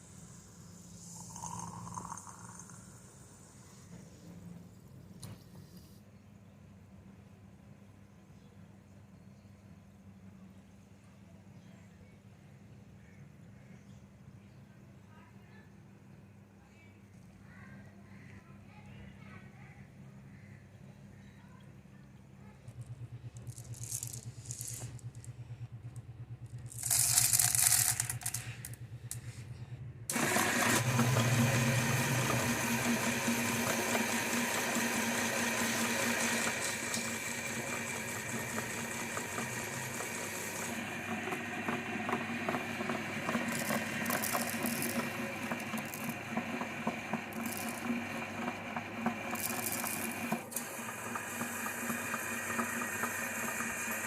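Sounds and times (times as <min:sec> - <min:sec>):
low hum: 0:21.4 - 0:30.1
electric meat grinder running: 0:30.1 - 0:54.0.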